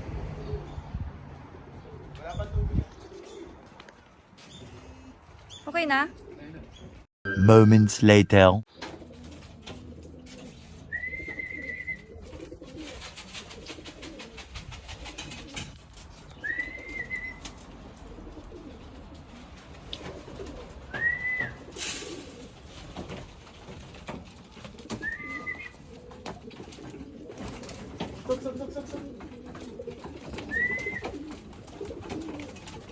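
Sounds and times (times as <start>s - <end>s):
pigeons cooing: 24.7s - 32.9s.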